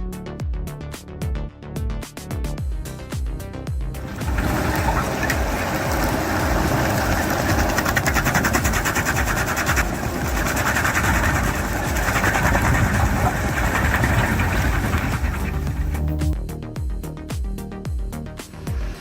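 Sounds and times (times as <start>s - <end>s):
fast mechanical rattle: 4.0s - 16.4s
heavy machinery engine running: 4.0s - 16.4s.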